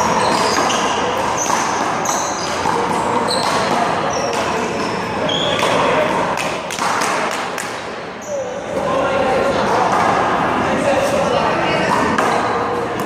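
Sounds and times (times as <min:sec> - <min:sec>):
short high squeaks: 0:00.0 - 0:02.6, 0:03.2 - 0:05.7
chatter of voices: 0:00.0 - 0:13.0
handball slapping: 0:00.1 - 0:04.9, 0:05.5 - 0:07.8.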